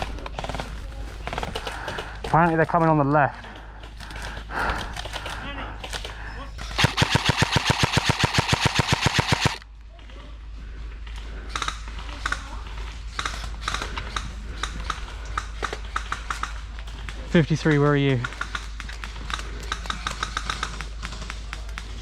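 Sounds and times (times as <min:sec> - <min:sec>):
airsoft gun full-auto burst: 0:06.8 - 0:09.6.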